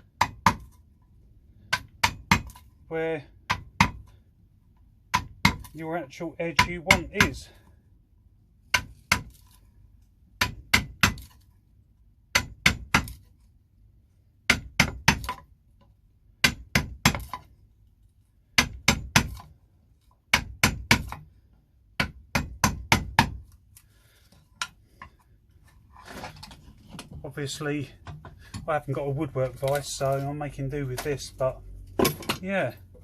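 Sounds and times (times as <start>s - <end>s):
chisel striking wood: 0.0s - 0.8s, 1.6s - 2.7s, 3.4s - 4.2s, 5.1s - 5.8s, 6.4s - 7.6s, 8.7s - 9.6s, 10.4s - 11.4s, 12.3s - 13.3s, 14.4s - 17.5s, 18.5s - 19.5s, 20.2s - 21.3s, 21.9s - 23.6s, 32.0s - 32.5s.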